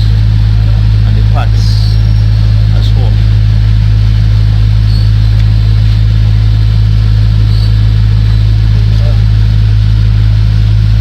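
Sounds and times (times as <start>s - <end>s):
loud steady low hum: 0.0s - 11.0s.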